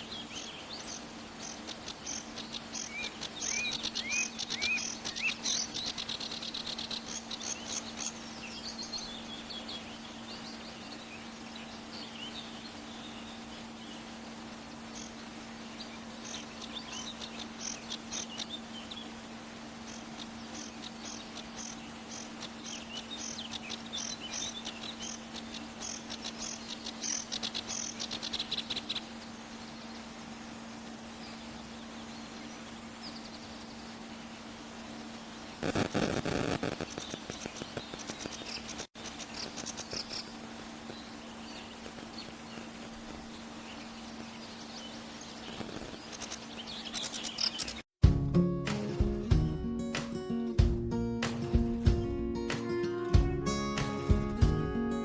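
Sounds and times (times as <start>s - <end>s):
small birds chirping: 0.0s - 55.0s
steady low hum: 48.0s - 55.0s.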